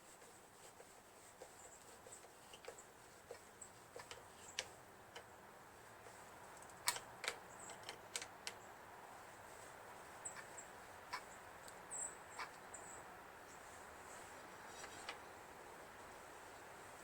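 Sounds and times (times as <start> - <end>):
small metallic clicks and taps: 2.2 - 5.3, 6.5 - 8.6.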